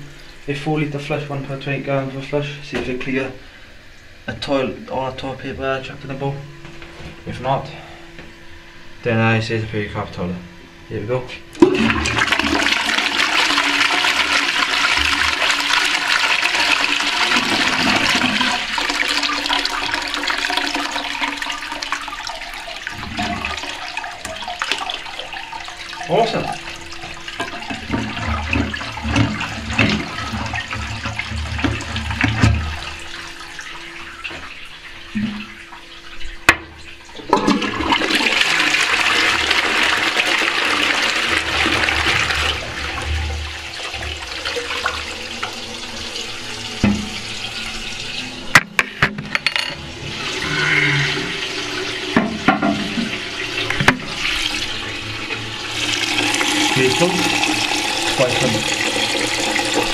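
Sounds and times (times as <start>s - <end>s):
toilet water running and gurgling: 11.5s - 49.0s, 49.8s - 59.9s.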